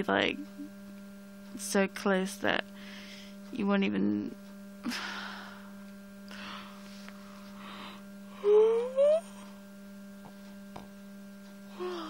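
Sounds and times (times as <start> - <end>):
low hum through wall: 0.0 - 12.0
person humming rising pitch: 8.3 - 9.6, 11.7 - 12.0.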